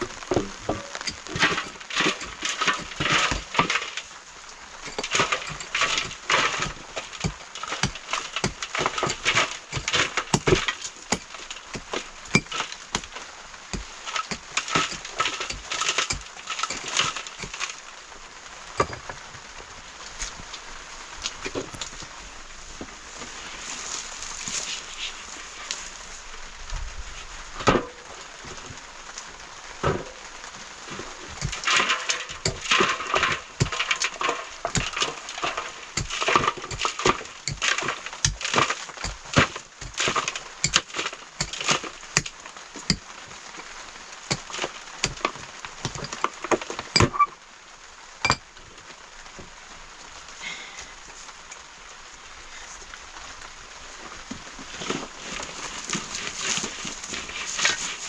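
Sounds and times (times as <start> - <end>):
steady hiss: 0.0 - 58.0
irregular knocks clinks and cracks: 0.2 - 4.1, 4.8 - 13.2, 13.8 - 17.8, 31.4 - 43.0, 44.3 - 47.3.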